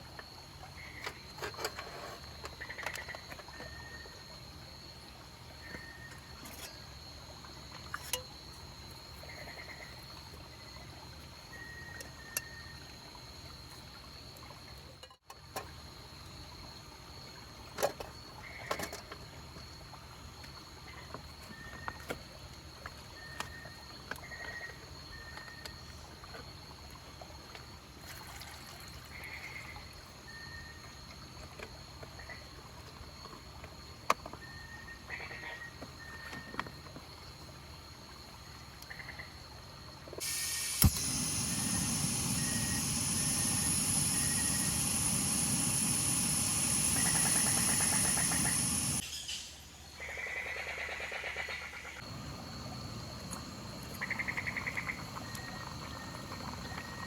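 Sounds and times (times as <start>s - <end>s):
insect chirping calls: 0.1s - 14.6s, 32.0s - 57.0s
insects trilling: 0.1s - 57.0s.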